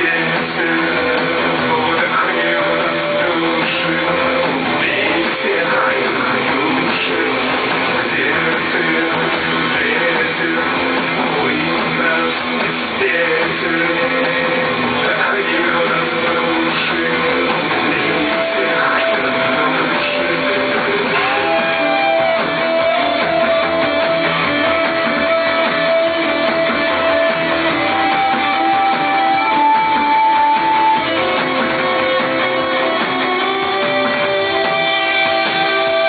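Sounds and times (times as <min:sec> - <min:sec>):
live rock band playing: 0:00.0 - 0:36.0
electric guitar solo: 0:17.0 - 0:36.0.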